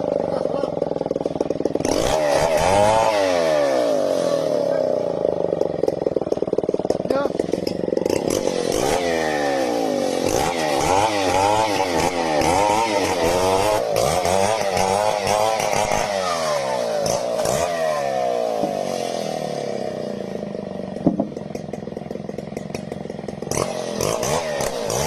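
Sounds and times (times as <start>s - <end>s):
chainsaw cutting wood: 0.0s - 25.0s
sharp knock: 21.0s - 21.3s.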